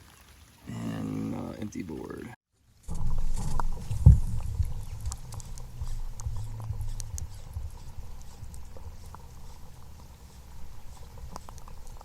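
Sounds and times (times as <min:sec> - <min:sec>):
low rumble: 0:02.8 - 0:12.0
light taps and clicks: 0:10.6 - 0:12.0.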